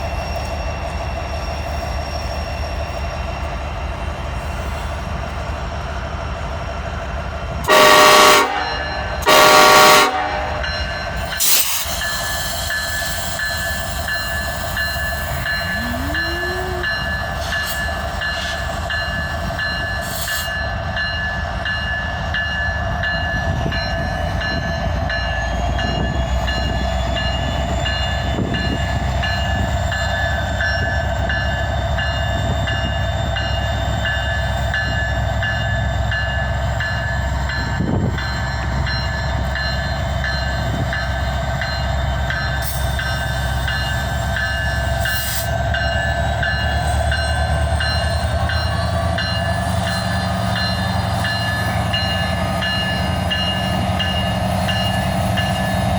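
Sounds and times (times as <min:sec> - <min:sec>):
freight train rumbling: 0:00.0 - 0:55.9
whining tones: 0:14.1 - 0:19.0.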